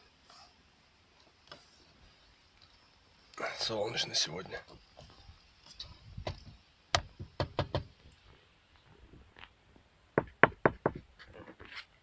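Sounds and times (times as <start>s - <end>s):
sharp knocks and taps in car: 6.2s - 7.9s, 10.2s - 11.1s.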